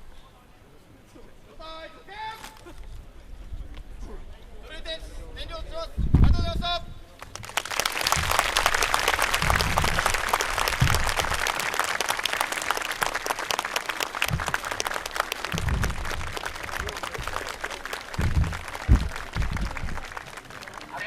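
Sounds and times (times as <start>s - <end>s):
crowd applauding: 7.2s - 21.0s.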